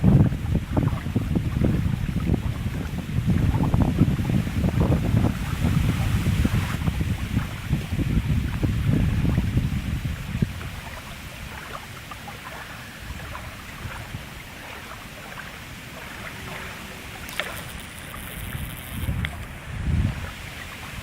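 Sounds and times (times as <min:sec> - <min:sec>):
wind rumble on microphone: 0:00.0 - 0:21.0
steady hiss: 0:16.9 - 0:21.0
faint ticks and crackles: 0:17.2 - 0:19.6.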